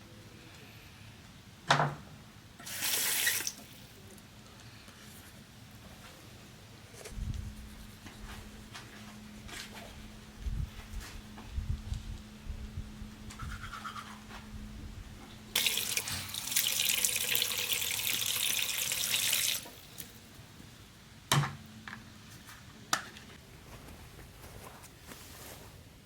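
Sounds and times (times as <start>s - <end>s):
water running: 2.6s - 3.8s, 15.6s - 20.2s.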